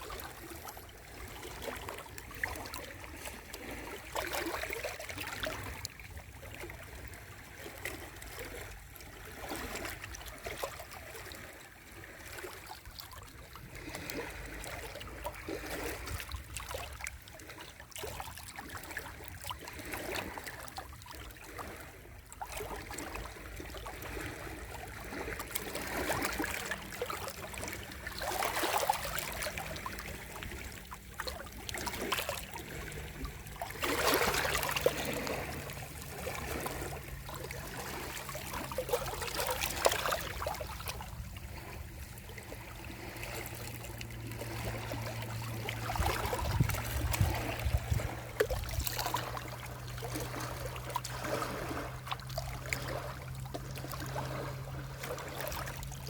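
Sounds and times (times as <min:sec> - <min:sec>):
sea waves washing in: 0:21.6 - 0:56.0.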